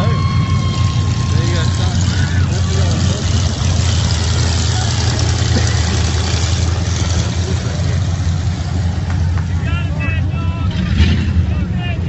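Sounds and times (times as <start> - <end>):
stock car engines rumbling: 0.0 - 12.0.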